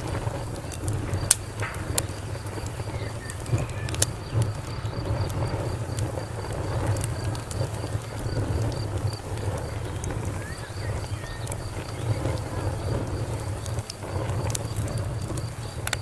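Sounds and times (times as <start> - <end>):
cricket chirping: 0.0 - 16.0
low rumble of flames: 0.0 - 16.0
wood fire crackling and popping: 0.0 - 16.0.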